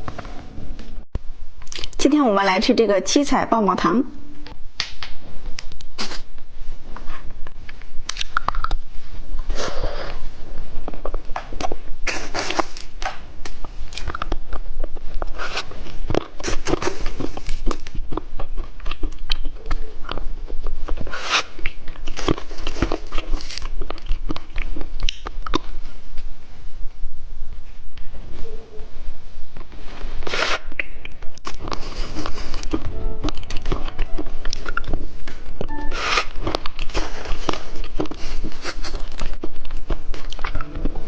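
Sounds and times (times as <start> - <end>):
hard lollipop crunching: 8.0 - 8.9, 10.8 - 25.8.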